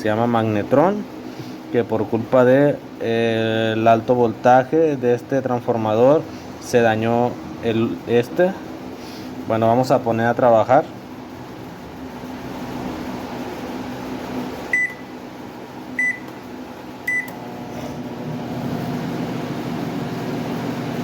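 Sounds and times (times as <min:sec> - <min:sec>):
microwave oven humming: 0:00.0 - 0:21.0
keypad beeps: 0:14.7 - 0:15.1, 0:16.0 - 0:16.4, 0:17.1 - 0:17.4.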